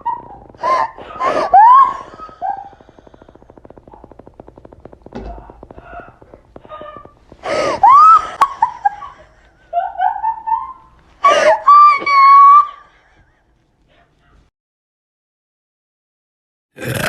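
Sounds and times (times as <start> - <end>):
person's high-pitched cries: 11.3 - 12.8.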